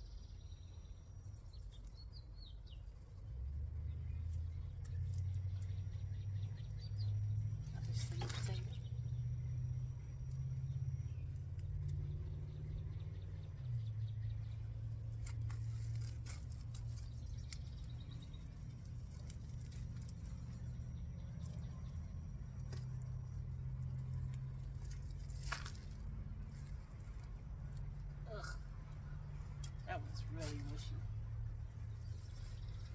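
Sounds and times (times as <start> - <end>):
soft clicks and rustles in soil: 1.5 - 6.8, 7.6 - 8.9, 11.3 - 12.1, 14.4 - 32.9.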